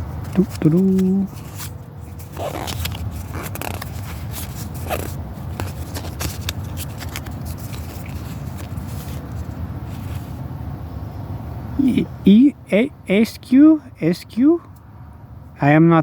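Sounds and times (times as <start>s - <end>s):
cards rustling: 0.0s - 10.4s
low steady hum: 0.0s - 16.0s
foil pack tearing and crinkling: 2.2s - 8.1s.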